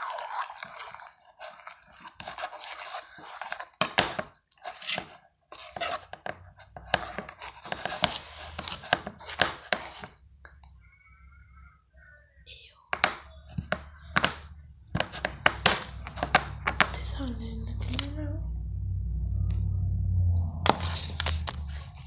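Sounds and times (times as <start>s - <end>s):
slime squishing by hand: 0.0s - 11.0s.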